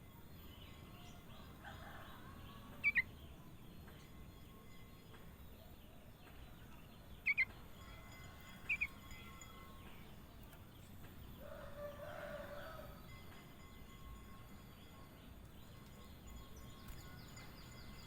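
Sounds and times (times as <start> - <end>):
bird chirping: 0.0 - 18.0
bird warbling call: 2.8 - 3.1, 7.2 - 7.5, 8.7 - 9.0.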